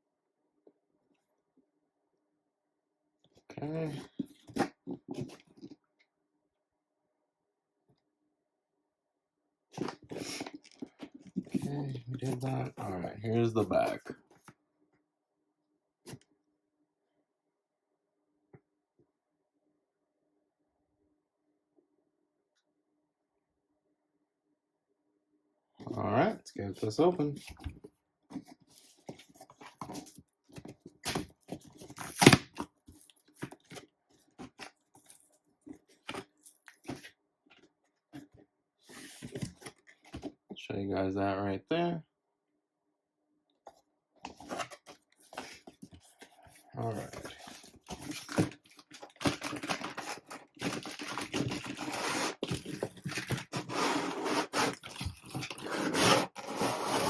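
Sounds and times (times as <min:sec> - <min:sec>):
cardboard box being torn open: 0:31.1 - 0:32.7, 0:47.1 - 0:57.0
packaging rustling: 0:44.3 - 0:57.0.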